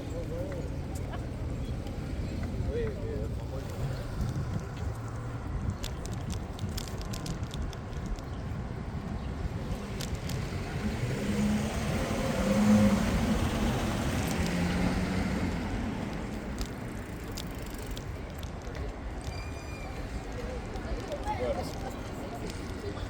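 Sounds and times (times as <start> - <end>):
traffic rumble: 0.0 - 23.0
wind: 0.0 - 23.0
vehicle passing by: 9.7 - 17.0.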